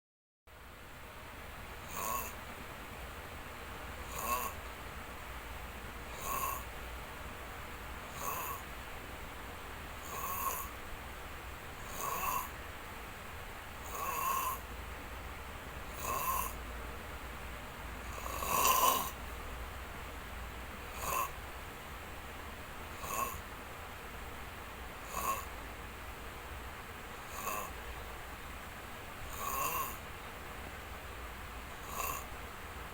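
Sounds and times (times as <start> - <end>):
person snoring: 1.8 - 2.4, 4.0 - 4.6, 6.1 - 6.7, 8.1 - 8.6, 10.0 - 10.7, 11.8 - 12.5, 13.8 - 14.7, 15.9 - 16.6, 18.1 - 19.2, 20.9 - 21.3, 22.9 - 23.4, 25.0 - 25.5, 27.3 - 27.8, 29.3 - 30.0, 31.8 - 32.3.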